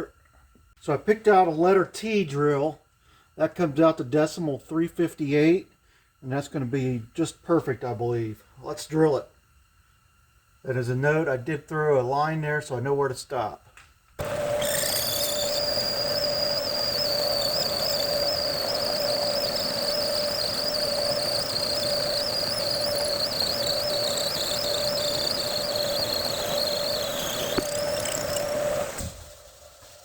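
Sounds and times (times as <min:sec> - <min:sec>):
lathe machine hum: 0:14.2 - 0:29.1
drill cutting whine: 0:14.2 - 0:29.2.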